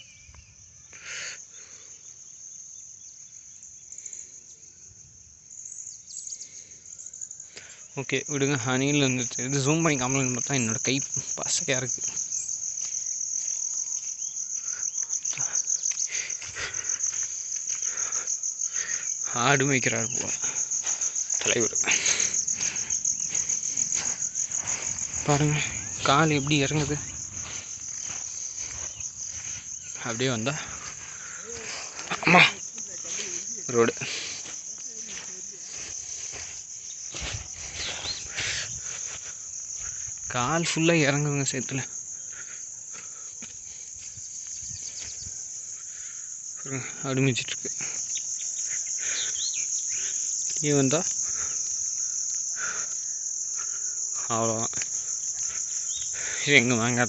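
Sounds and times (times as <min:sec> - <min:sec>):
insects trilling: 0:00.0 - 0:57.0
footsteps in wet mud: 0:09.3 - 0:40.7, 0:42.3 - 0:45.6.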